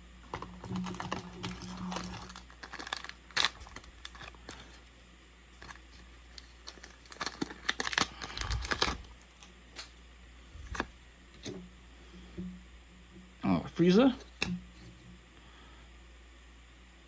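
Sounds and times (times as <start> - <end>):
foil wrapper crinkling and tearing: 0.2 - 4.9, 5.6 - 10.0
cards clicking and sliding: 10.6 - 11.6.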